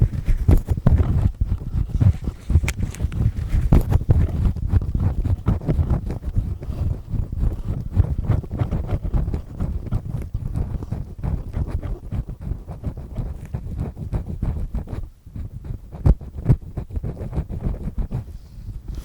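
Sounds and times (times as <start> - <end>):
earpick scraping and grinding: 0.0 - 15.0.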